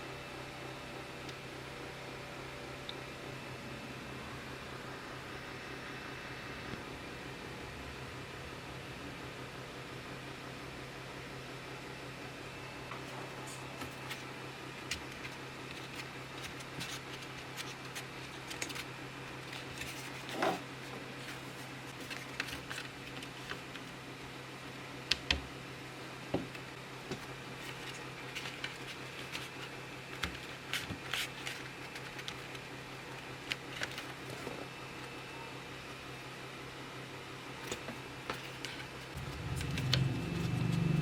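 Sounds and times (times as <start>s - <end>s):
low hum: 39.1s - 41.0s.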